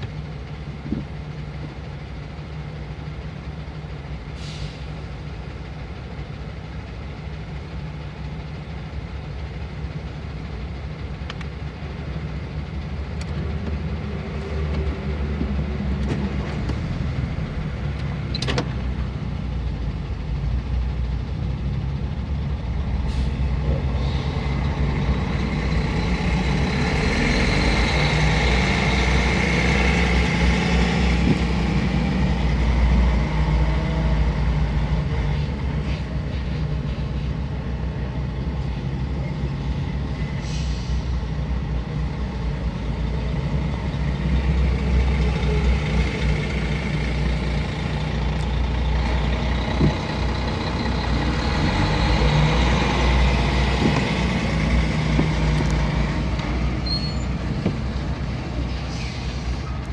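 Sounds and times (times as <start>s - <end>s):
truck engines rumbling: 0.0s - 59.9s
click: 11.2s - 11.5s, 13.2s - 13.8s
short air hisses: 40.4s - 41.2s.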